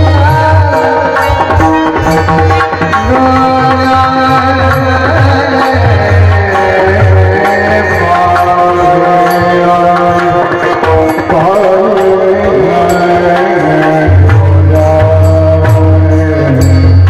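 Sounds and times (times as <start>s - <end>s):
hand drum: 0.0s - 17.0s.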